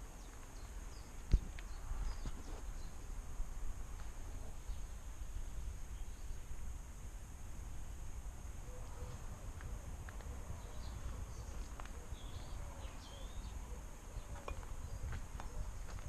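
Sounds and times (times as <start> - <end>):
insect drone: 0.0 - 16.0
bird chirps: 8.7 - 16.0.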